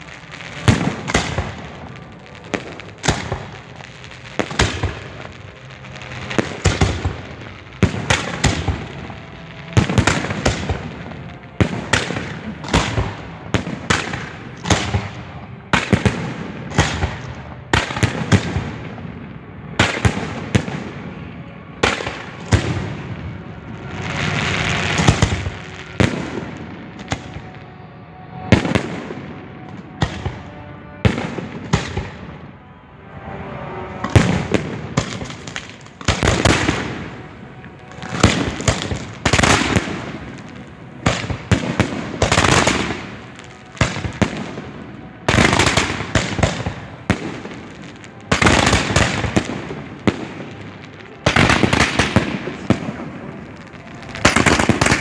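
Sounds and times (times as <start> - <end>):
fireworks booming: 0.2 - 15.2, 21.8 - 27.6.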